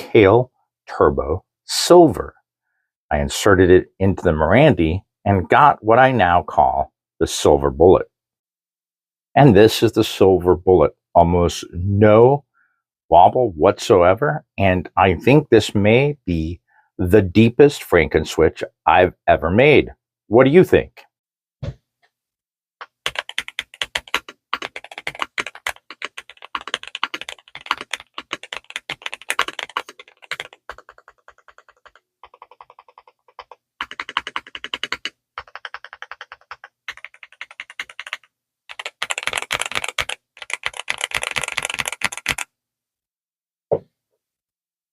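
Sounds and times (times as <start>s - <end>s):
mechanical keyboard typing: 22.8s - 42.5s.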